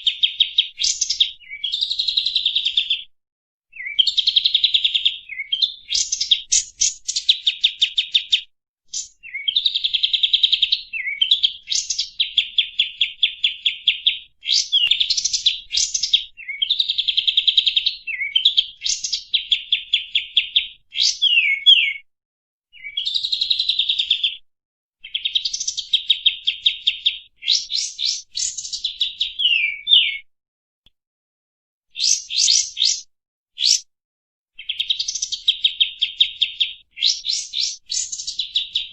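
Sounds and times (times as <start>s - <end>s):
bulbul chattering song: 14.8s - 16.2s, 32.0s - 33.0s, 33.6s - 33.8s.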